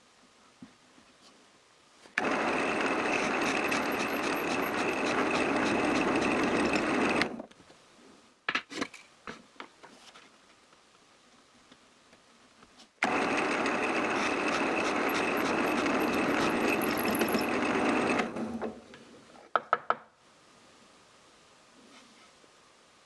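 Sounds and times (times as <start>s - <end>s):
drill press boring into wood: 2.2s - 7.4s, 13.0s - 18.5s.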